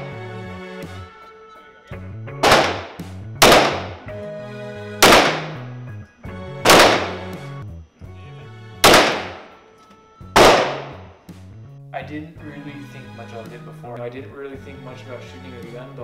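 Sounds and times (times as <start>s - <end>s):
background music with bass: 0.0s - 16.0s
handgun shots: 2.4s - 4.1s, 5.0s - 5.7s, 6.6s - 7.3s, 8.8s - 9.5s, 10.4s - 11.1s.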